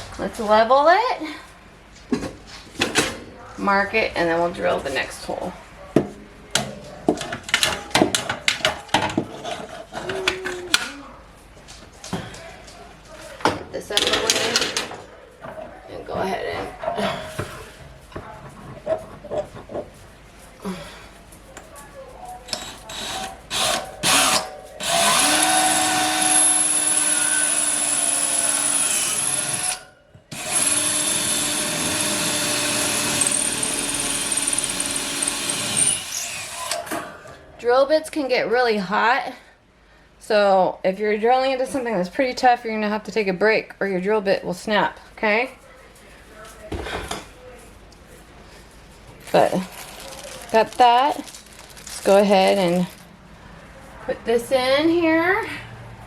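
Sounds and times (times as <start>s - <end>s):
power drill boring into tile: 22.9s - 36.8s.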